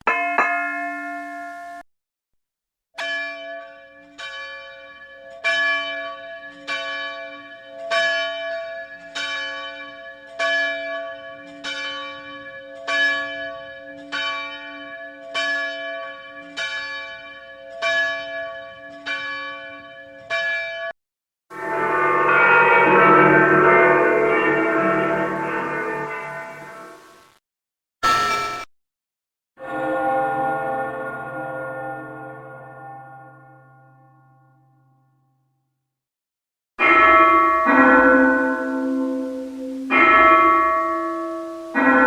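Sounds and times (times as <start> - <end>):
church bell tolling: 0.0 - 1.8, 3.0 - 20.9, 21.5 - 27.1, 29.6 - 35.2, 36.8 - 42.0
another bell ringing: 0.1 - 1.8.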